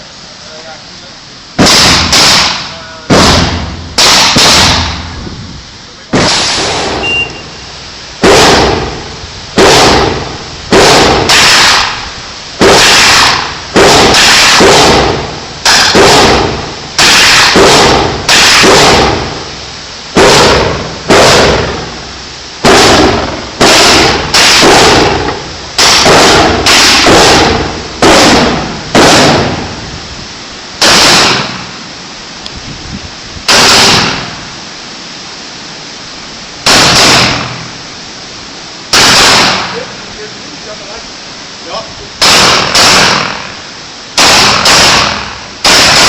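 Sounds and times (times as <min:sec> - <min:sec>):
rifle shots echoing: 0:01.6 - 0:05.1, 0:06.1 - 0:07.1, 0:08.2 - 0:19.5, 0:20.1 - 0:29.8, 0:30.8 - 0:31.7, 0:33.5 - 0:34.4, 0:36.6 - 0:37.7, 0:38.9 - 0:39.9, 0:42.2 - 0:43.6, 0:44.2 - 0:46.0.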